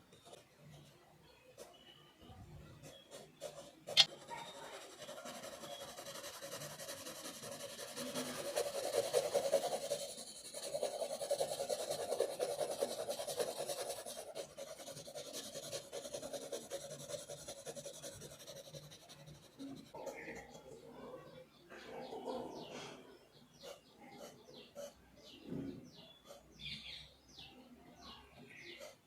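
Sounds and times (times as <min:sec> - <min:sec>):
pencil scratching on paper: 0:02.7 - 0:20.6, 0:23.5 - 0:25.0, 0:28.5 - 0:29.0.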